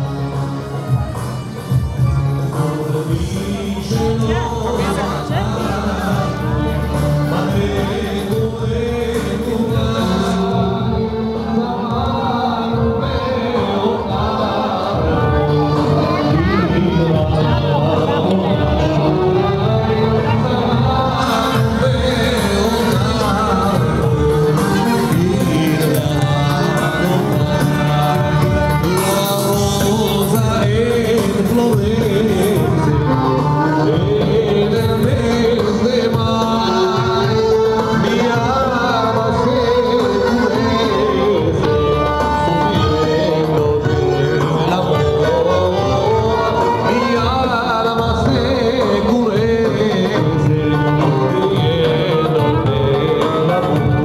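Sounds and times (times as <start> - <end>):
music with singing: 0.0 - 54.0.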